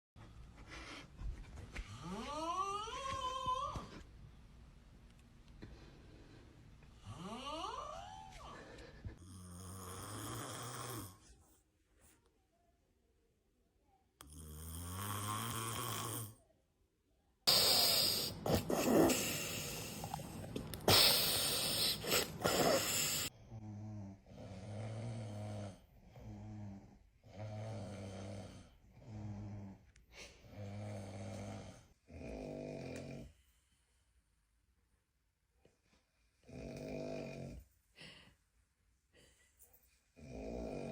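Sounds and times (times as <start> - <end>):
person snoring: 9.2 - 11.2, 14.2 - 16.4, 17.5 - 29.8, 36.4 - 37.6, 40.2 - 40.9.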